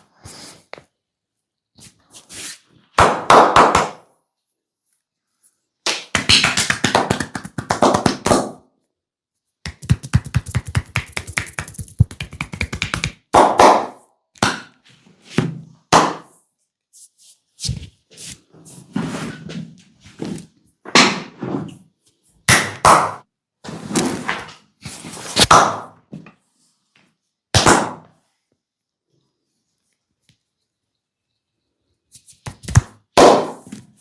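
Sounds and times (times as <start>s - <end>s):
massage slaps and thumps on body: 5.9s - 8.6s, 9.6s - 14.7s.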